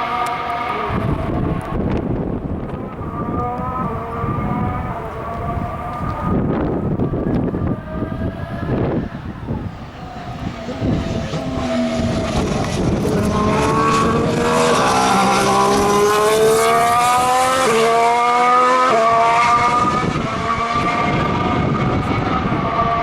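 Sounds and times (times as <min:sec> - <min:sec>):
racing car engine accelerating: 0:00.0 - 0:23.0.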